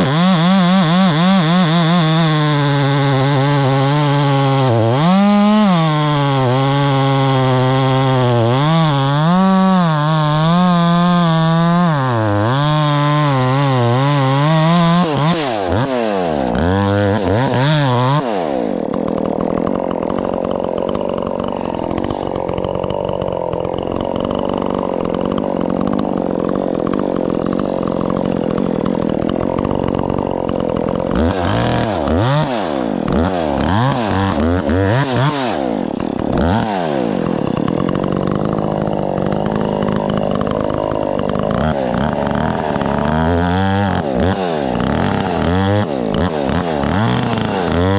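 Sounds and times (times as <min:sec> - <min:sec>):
chainsaw cutting and revving: 0:00.0 - 0:47.9.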